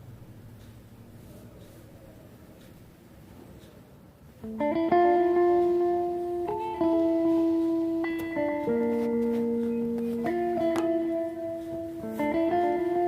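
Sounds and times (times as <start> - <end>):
plucked guitar music: 4.4 - 13.0.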